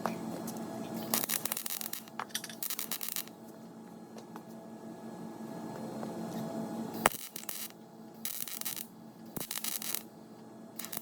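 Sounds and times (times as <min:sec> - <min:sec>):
welder hum: 0:00.4 - 0:11.0
crackling welding arc bursts: 0:01.0 - 0:03.4, 0:07.0 - 0:10.1, 0:10.8 - 0:11.0.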